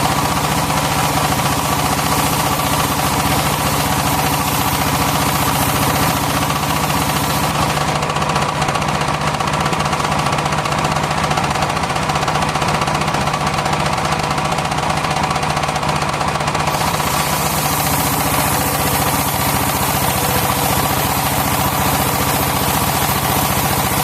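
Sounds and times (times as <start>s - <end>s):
sawmill engine running: 0.0s - 24.0s
high hiss: 0.1s - 7.8s, 16.7s - 24.0s.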